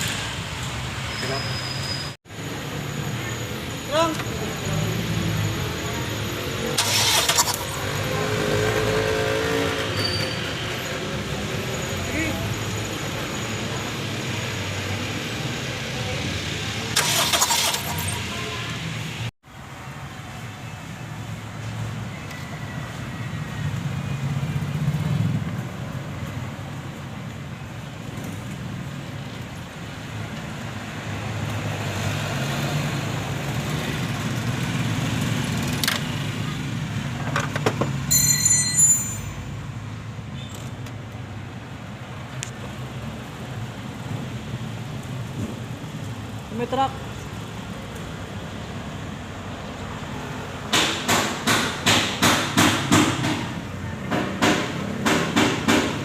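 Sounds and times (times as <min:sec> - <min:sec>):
hammer on metal: 0:50.7 - 0:56.0.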